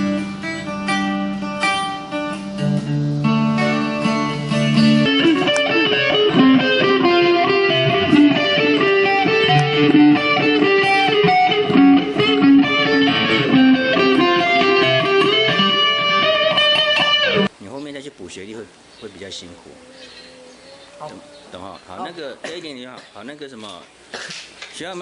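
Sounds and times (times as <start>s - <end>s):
plucked guitar notes: 0.0s - 17.5s.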